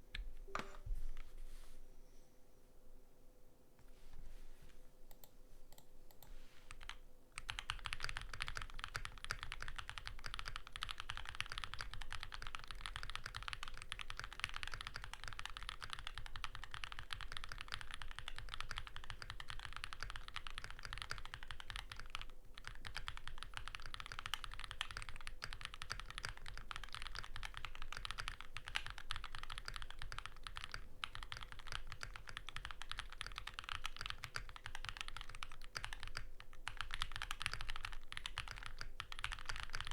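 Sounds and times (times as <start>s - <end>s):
mechanical keyboard typing: 5.1s - 39.9s.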